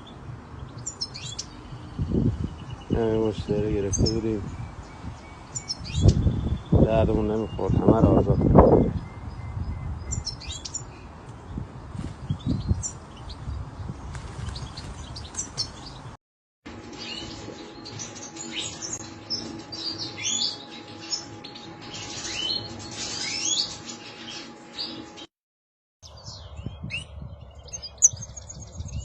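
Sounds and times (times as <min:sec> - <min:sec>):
finches twittering: 0:00.0 - 0:11.6, 0:17.0 - 0:25.0.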